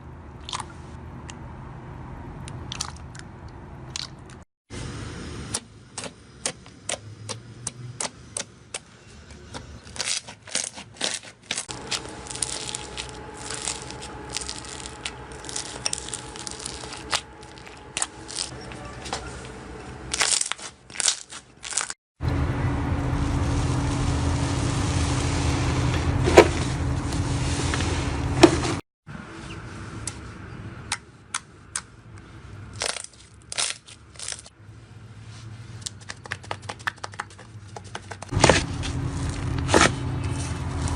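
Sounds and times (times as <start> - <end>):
slime clicking and crackling: 9.9 - 18.5, 20.1 - 22.0, 32.8 - 34.5
low hum: 11.7 - 30.9, 38.3 - 40.9.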